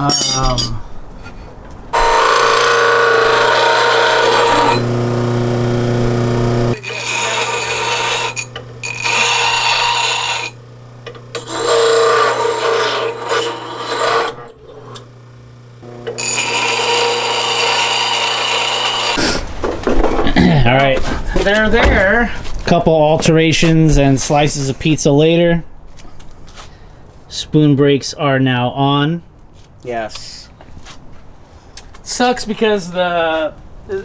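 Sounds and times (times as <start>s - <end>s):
power tool grinding: 1.9s - 20.2s.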